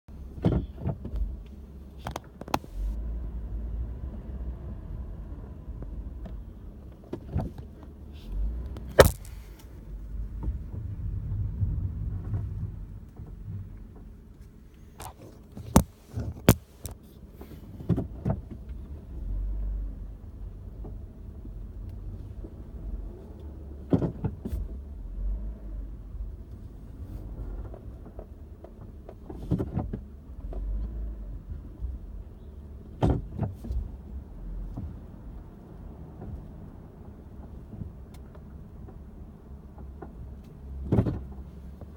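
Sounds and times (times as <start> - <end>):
car rumbling: 0.0 - 41.9
sharp clunks: 8.8 - 9.8.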